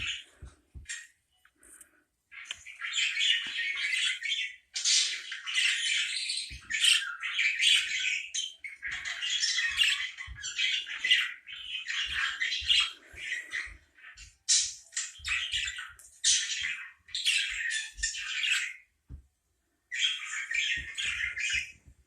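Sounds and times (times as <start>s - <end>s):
parakeet chattering and squawking: 2.3s - 18.9s.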